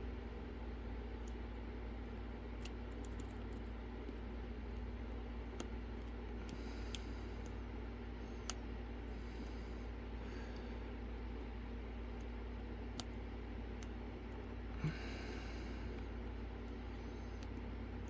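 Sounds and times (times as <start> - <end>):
steady low hum: 0.0 - 18.0
lock picks clicking in padlock: 2.6 - 3.6.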